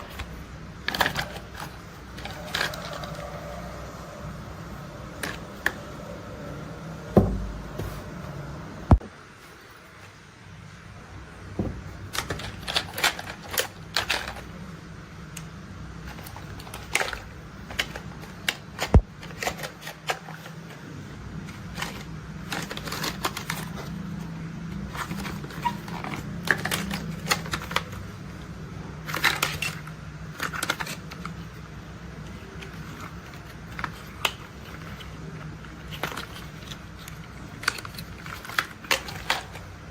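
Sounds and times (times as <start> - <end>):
plastic toy parts clattering: 0.0 - 3.5, 11.6 - 14.8, 15.4 - 39.9
steady low hum: 0.0 - 39.9.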